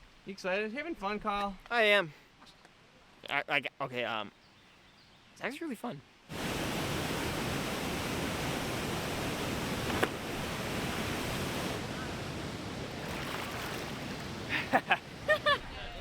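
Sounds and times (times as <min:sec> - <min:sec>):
waterfall rushing: 0:06.3 - 0:15.2.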